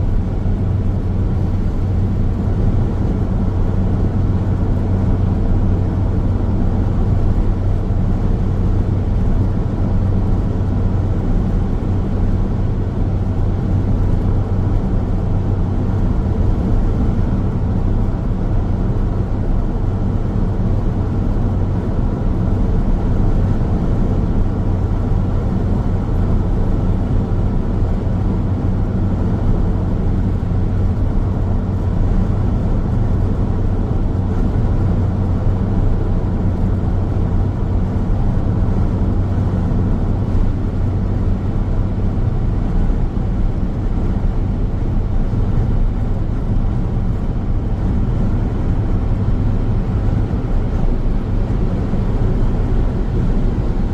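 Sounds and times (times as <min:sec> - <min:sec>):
car road noise on highway: 0:00.0 - 0:53.9
steady low hum: 0:00.0 - 0:53.9.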